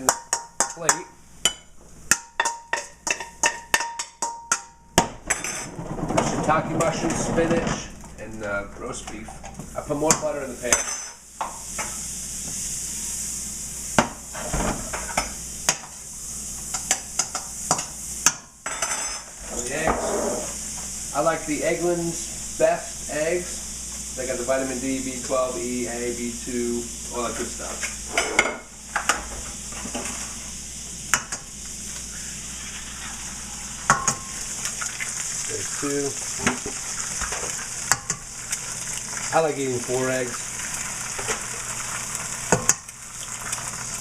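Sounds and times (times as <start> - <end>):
utensils knocking against pan: 0.0 - 5.7
butter sizzling in a frying pan: 9.6 - 19.9, 20.5 - 44.0.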